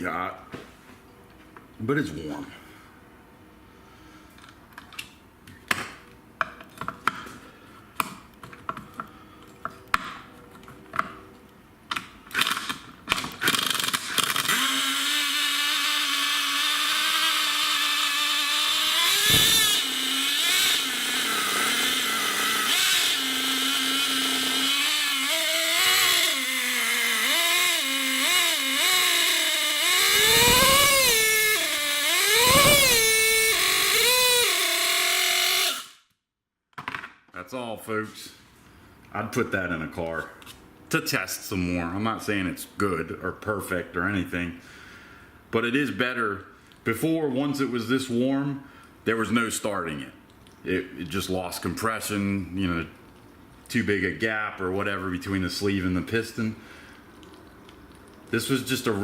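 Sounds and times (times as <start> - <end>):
model engine cranking: 13.4 - 36.0
small engine running and revving: 13.6 - 36.0.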